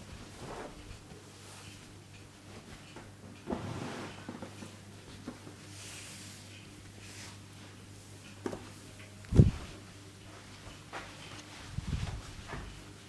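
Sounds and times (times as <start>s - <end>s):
hands rubbing hair and scalp: 9.3s - 9.7s.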